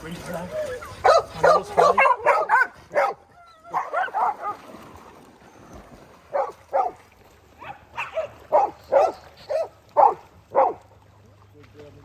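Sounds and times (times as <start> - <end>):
dog barking: 1.0 - 4.6, 6.3 - 7.0, 7.6 - 10.8.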